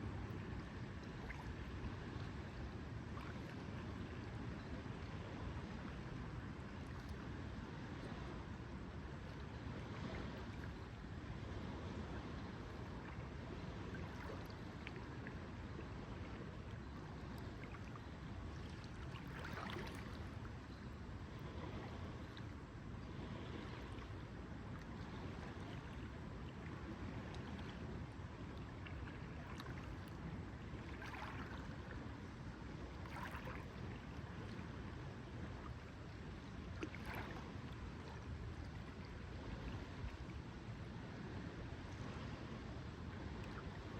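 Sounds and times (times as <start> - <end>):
low rumble of wind and water: 0.0 - 43.9
small waves lapping: 0.0 - 43.9.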